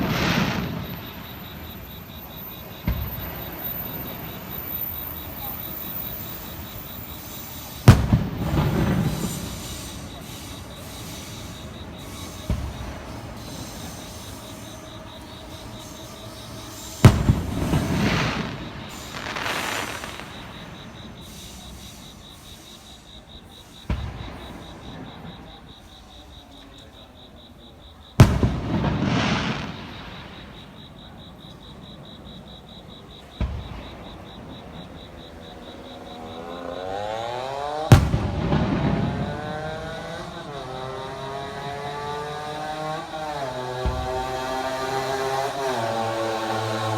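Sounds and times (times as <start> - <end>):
rolling rumble and crackle: 0.0 - 22.4, 28.2 - 31.8, 37.9 - 46.9
firework shells booming: 0.0 - 22.6, 23.4 - 26.0, 28.2 - 46.9.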